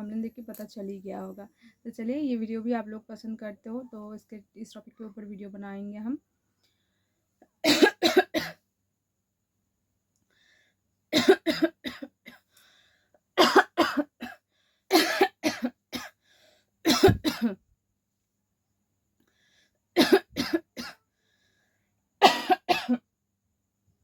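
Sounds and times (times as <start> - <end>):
person coughing: 7.6 - 8.6, 11.2 - 12.1, 13.4 - 16.1, 16.9 - 17.6, 20.0 - 21.0, 22.2 - 23.0.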